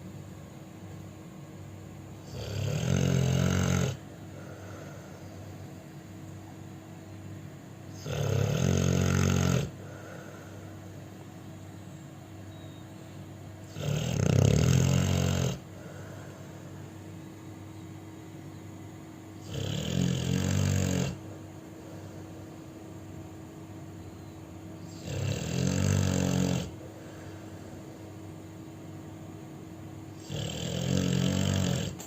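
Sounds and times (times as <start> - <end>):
dog snoring loudly: 2.2 - 5.4, 7.9 - 10.6, 13.6 - 16.6, 19.4 - 21.3, 24.8 - 27.3, 30.1 - 32.0.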